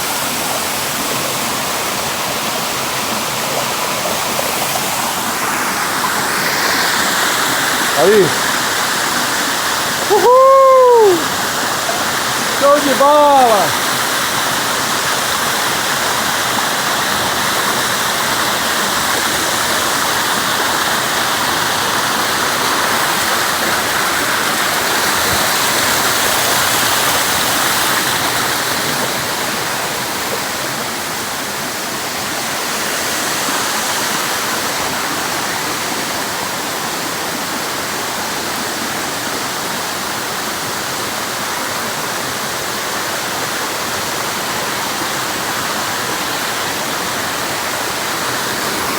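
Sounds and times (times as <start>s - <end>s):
waterfall pouring: 0.0s - 48.9s.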